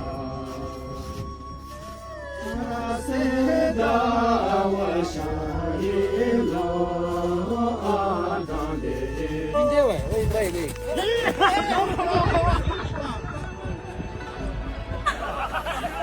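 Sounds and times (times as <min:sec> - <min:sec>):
voices chanting in harmony: 0:00.0 - 0:12.1
steady low drone: 0:00.0 - 0:16.0.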